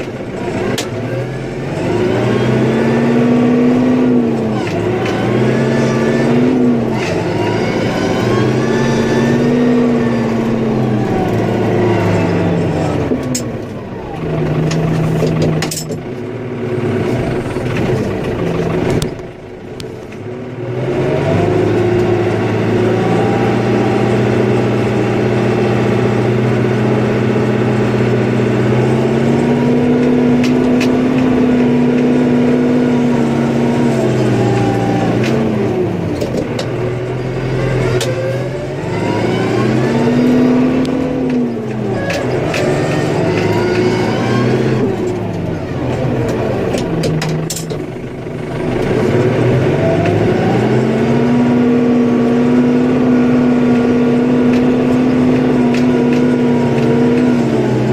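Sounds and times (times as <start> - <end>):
engine revving: 0.0 - 57.9.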